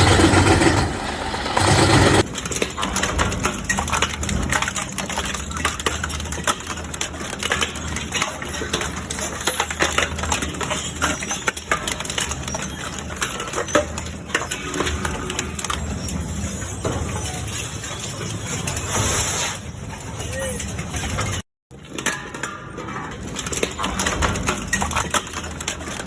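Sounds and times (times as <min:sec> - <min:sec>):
low engine hum: 0:00.0 - 0:02.2.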